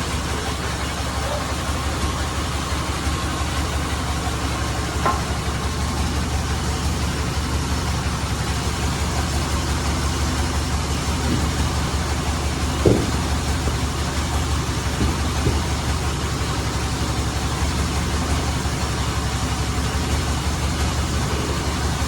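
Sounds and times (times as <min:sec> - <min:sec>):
band saw engine droning: 0:00.0 - 0:22.0
knock: 0:05.0 - 0:05.3, 0:12.8 - 0:13.3.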